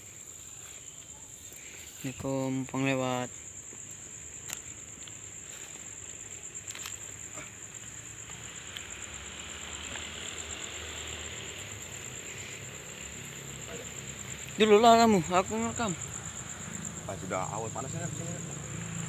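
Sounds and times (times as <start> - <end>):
crickets trilling: 0.0 - 19.0.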